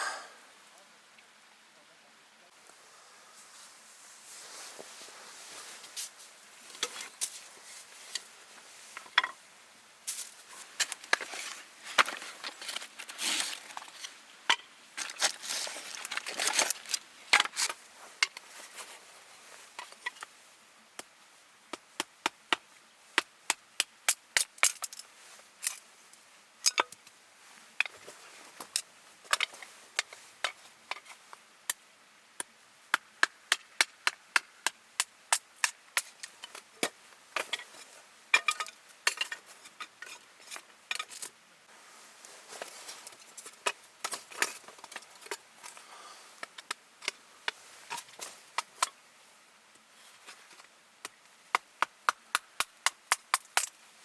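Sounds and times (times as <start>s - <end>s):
wood scraping: 10.8s - 14.2s
firewood being chopped: 32.9s - 37.6s, 51.0s - 53.8s.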